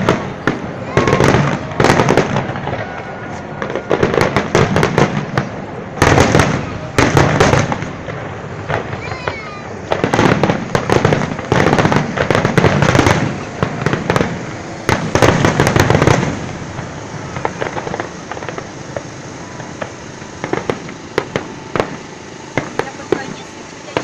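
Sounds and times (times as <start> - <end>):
fireworks bangs and crackling: 0.0 - 24.0.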